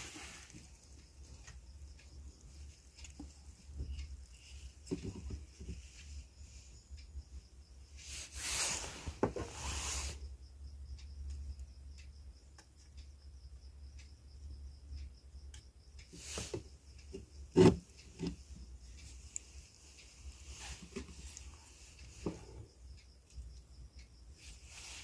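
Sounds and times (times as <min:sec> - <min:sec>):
rubbing and scraping: 0:17.5 - 0:18.5.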